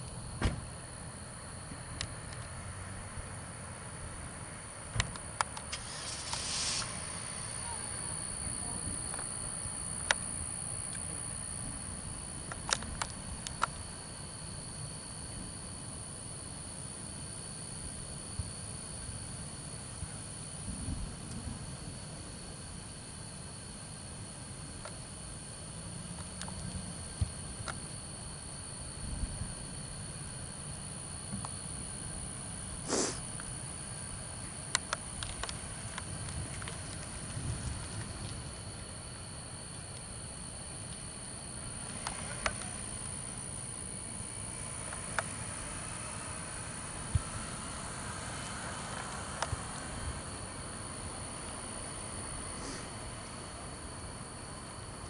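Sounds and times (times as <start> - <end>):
faint high-pitched whine: 0.0 - 55.0
nasal sniff: 32.8 - 33.3, 52.6 - 52.9.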